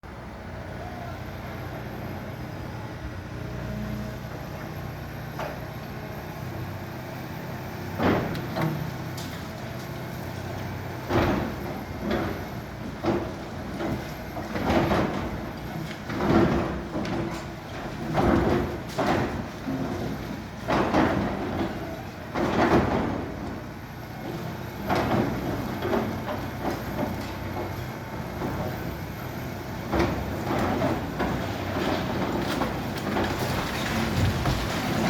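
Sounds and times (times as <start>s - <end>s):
excavator engine running: 0.1s - 35.0s
concrete breaking and rubble falling: 31.5s - 35.0s.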